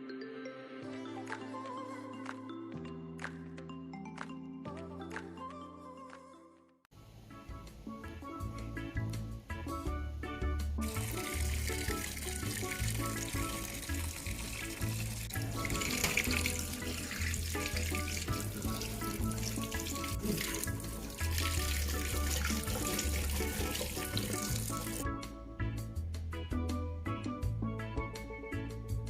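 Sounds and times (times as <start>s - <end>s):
background music with bass line: 7.1s - 29.0s
tap water running into a sink: 10.8s - 25.0s.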